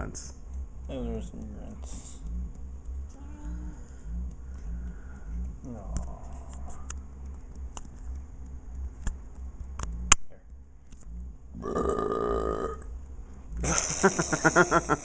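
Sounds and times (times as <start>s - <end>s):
sharp clicks: 0.3s - 11.1s
boy burping: 11.6s - 12.9s.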